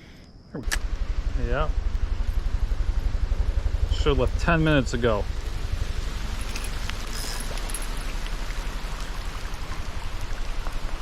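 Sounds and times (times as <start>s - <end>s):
river water rushing: 5.3s - 11.0s.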